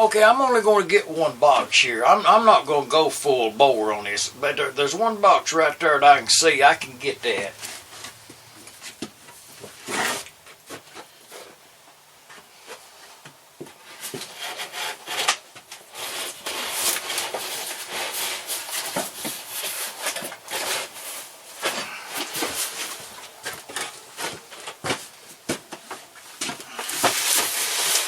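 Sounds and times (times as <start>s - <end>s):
box rubbing and rustling: 6.8s - 11.6s, 13.8s - 28.0s.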